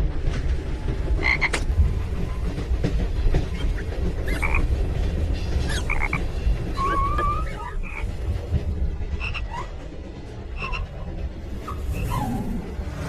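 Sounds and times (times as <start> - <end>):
ride carriage rumbling: 0.0 - 13.0
high squeaky calls: 6.8 - 8.0, 9.2 - 9.7, 10.5 - 11.0.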